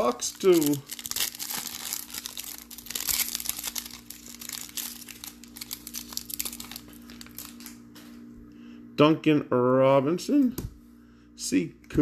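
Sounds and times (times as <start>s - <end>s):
foil wrapper tearing and crinkling: 0.0s - 7.8s
steady low hum: 0.0s - 12.0s.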